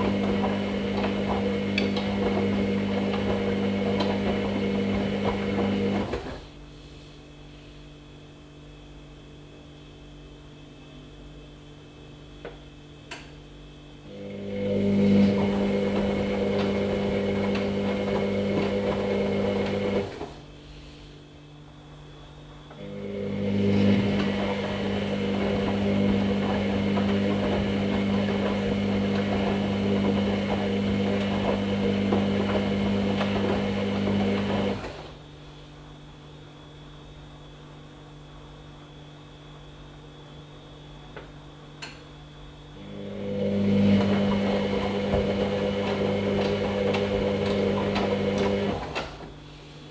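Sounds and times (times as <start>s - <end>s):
washing machine drum tumbling: 23.5s - 34.8s.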